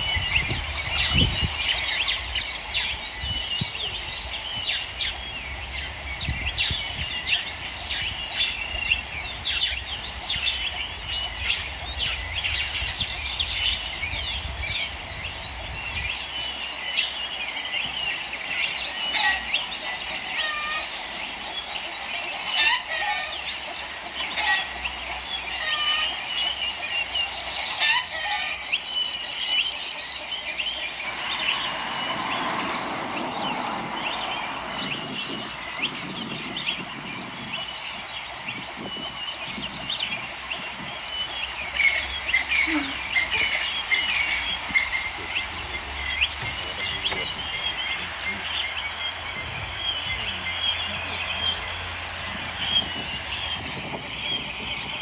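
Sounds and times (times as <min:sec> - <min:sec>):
birds chirping and singing: 0:00.0 - 0:55.0
low rumble: 0:31.0 - 0:38.4, 0:39.6 - 0:55.0.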